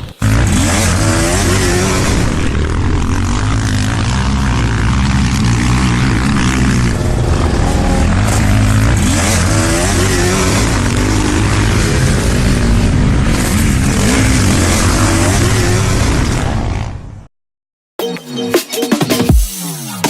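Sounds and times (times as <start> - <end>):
motocross engines revving: 0.0 - 17.2.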